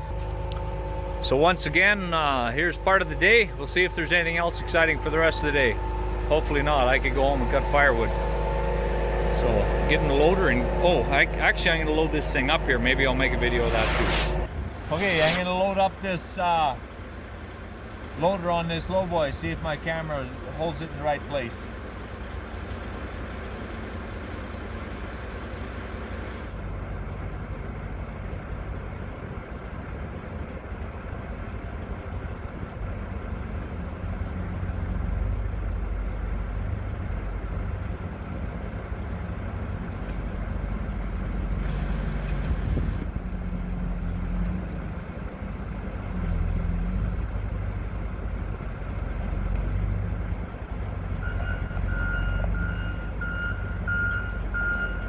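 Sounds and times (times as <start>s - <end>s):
diesel engine revving: 0.0s - 15.4s
reversing alarm beeping: 0.0s - 15.4s, 51.2s - 55.0s.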